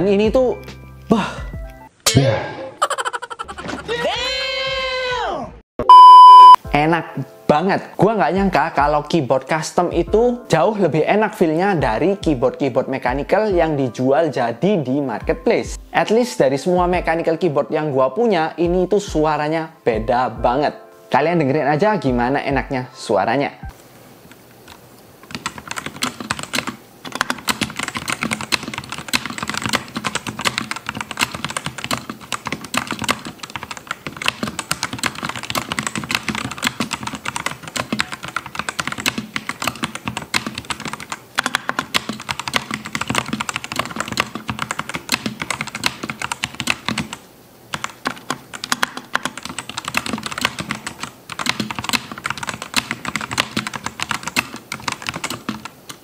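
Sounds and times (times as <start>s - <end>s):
mechanical keyboard typing: 25.2s - 56.0s.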